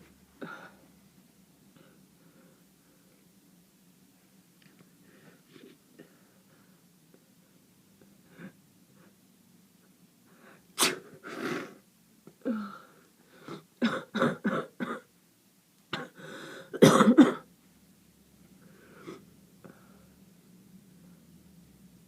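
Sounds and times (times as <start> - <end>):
person sneezing: 10.8 - 11.8
person coughing: 13.8 - 15.1, 15.9 - 17.5.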